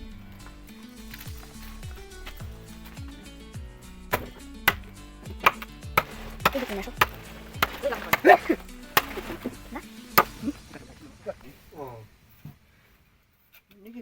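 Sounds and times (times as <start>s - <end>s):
background music: 0.0s - 12.3s
sharp knocks: 4.1s - 8.4s.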